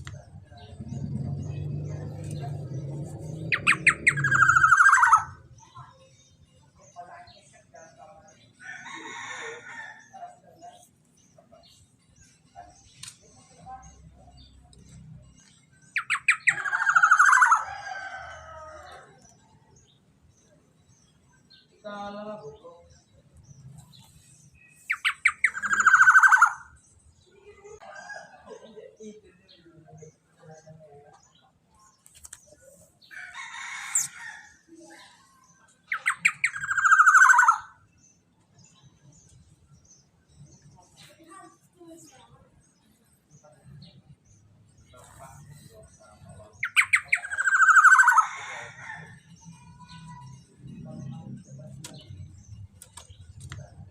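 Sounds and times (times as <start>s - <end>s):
harsh rattling bird call: 3.2s - 5.4s, 16.0s - 19.1s, 24.9s - 26.8s, 35.9s - 37.8s.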